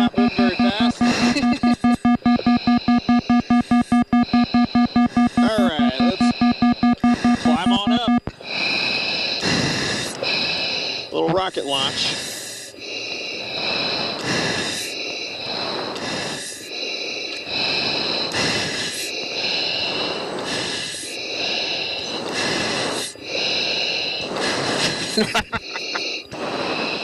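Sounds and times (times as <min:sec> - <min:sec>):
sharp clicks: 0:00.0 - 0:08.4
heavy breathing through oxygen mask: 0:00.0 - 0:27.0
hiss of oxygen flow: 0:08.5 - 0:11.2, 0:11.8 - 0:27.0.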